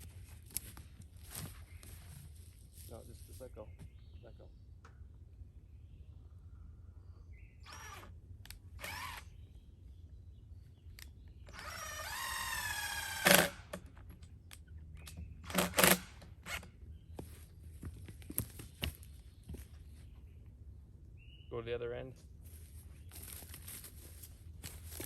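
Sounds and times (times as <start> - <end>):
tape measure retracting whir: 7.6 - 9.3, 11.5 - 14.0, 15.4 - 16.8.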